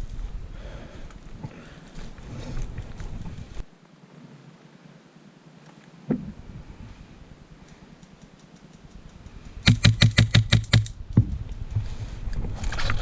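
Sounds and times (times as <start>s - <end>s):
airsoft gun rapid burst: 9.6s - 10.9s.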